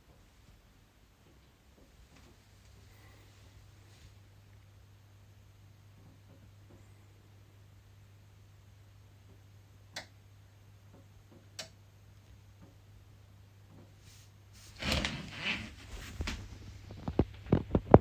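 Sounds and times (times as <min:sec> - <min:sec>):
rustling: 0:14.0 - 0:18.0.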